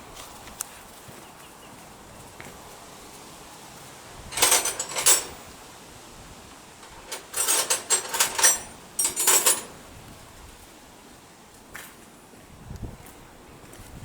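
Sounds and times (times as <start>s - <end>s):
metal hand tools clinking: 4.3s - 5.5s, 6.8s - 9.8s.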